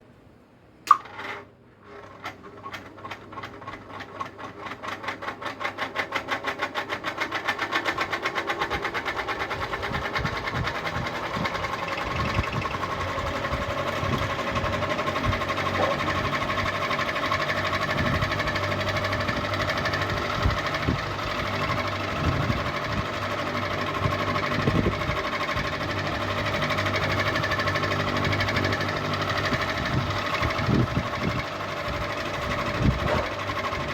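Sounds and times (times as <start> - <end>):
ceiling fan humming and rattling: 0.0 - 33.9
ceiling fan switch click: 0.8 - 1.1.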